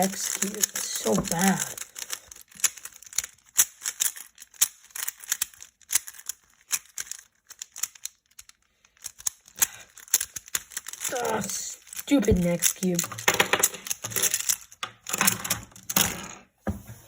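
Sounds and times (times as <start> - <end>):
puzzle cube layers clacking: 0.0 - 16.2.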